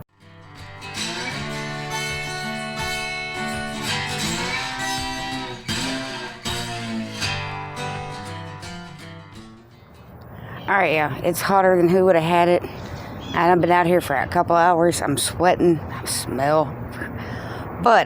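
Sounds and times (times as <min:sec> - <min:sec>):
guitar strumming chords: 0:00.0 - 0:10.2.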